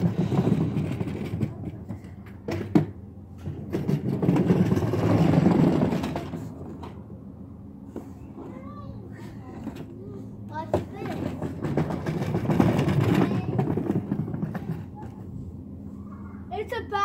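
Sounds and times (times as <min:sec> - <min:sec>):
wheels rolling over hard ground: 0:00.0 - 0:07.2, 0:09.4 - 0:15.5.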